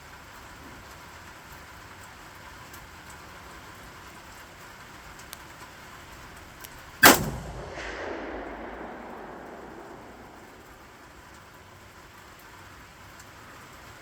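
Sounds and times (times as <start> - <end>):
rifle shot echoing: 7.0 - 11.3.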